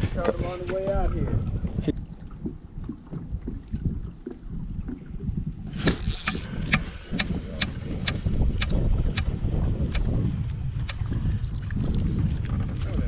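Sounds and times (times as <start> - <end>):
wind rumbling on microphone: 0.0 - 13.0
sharp rattle: 5.8 - 6.9.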